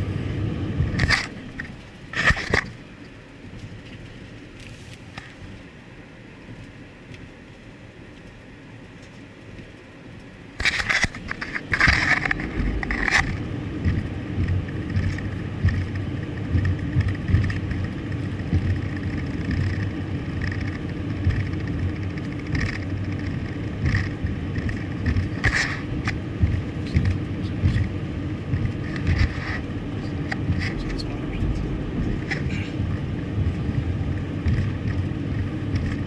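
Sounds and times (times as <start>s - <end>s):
vehicle road and engine rumble: 0.0s - 36.0s
sharp knocks and rattles: 10.6s - 36.0s.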